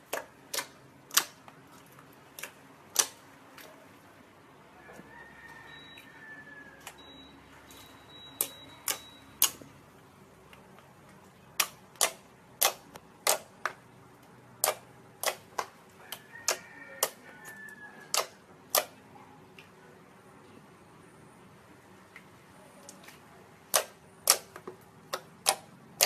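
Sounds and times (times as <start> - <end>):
sharp short clicks: 2.4 - 3.2, 8.3 - 9.6, 11.6 - 13.8, 14.6 - 15.8, 18.1 - 19.0, 23.7 - 26.0.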